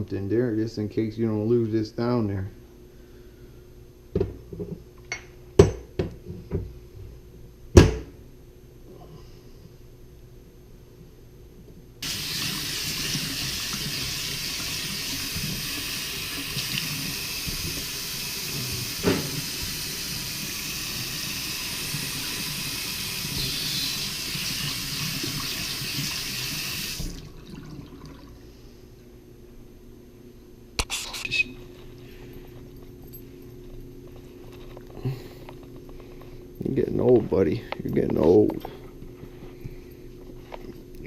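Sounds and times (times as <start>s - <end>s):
faucet water running into sink: 12.0s - 28.3s.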